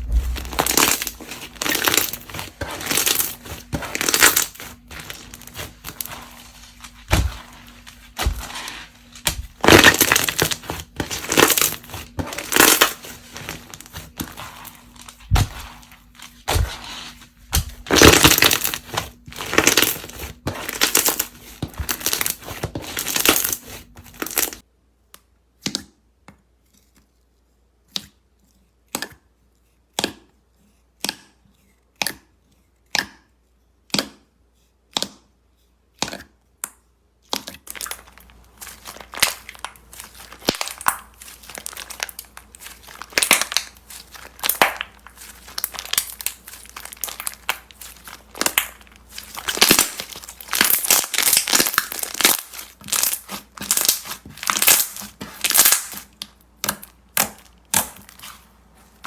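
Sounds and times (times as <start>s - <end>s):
slime crackling when squeezed: 37.6s - 58.4s.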